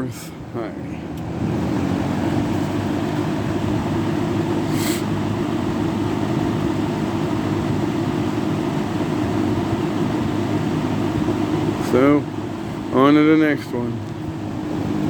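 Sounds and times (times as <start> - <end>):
box fan running: 0.0 - 15.0
brief hiss: 4.7 - 5.1.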